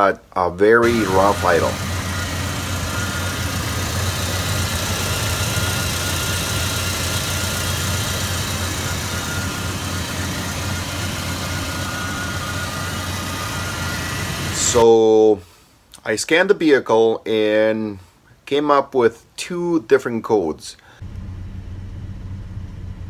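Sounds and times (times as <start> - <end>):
engine idling rough: 0.8 - 14.8, 21.0 - 23.0.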